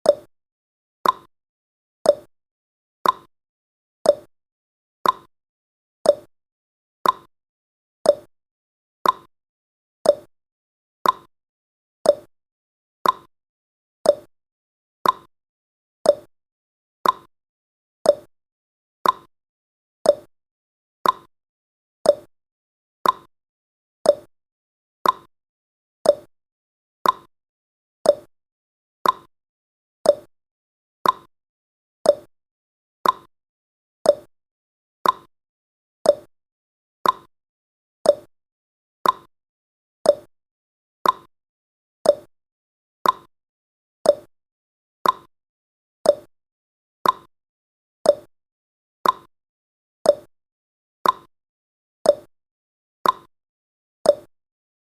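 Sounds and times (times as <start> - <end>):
clock ticking: 13.0 - 13.3, 29.0 - 29.3, 33.0 - 33.3, 37.0 - 37.3, 39.0 - 39.3, 43.0 - 43.3, 45.0 - 45.3, 47.0 - 47.3.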